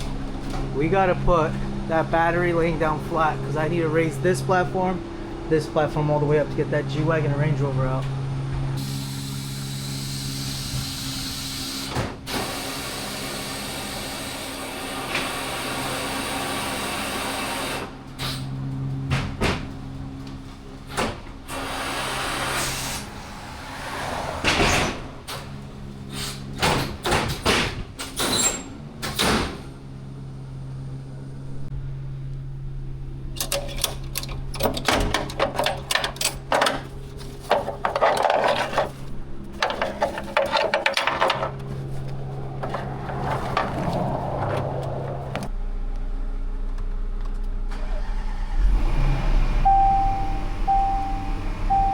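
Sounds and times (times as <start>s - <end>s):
metal knocks and clanks: 33.4s - 45.5s.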